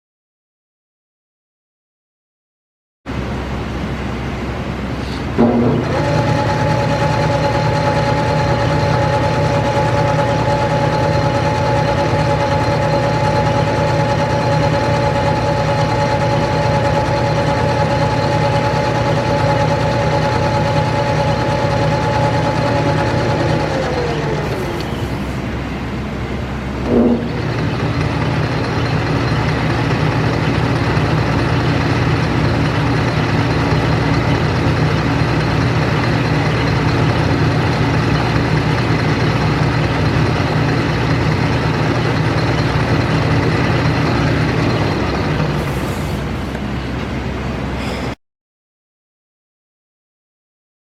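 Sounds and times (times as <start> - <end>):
metal lathe whining: 5.2 - 47.0
brief sharp sound: 26.8 - 27.5.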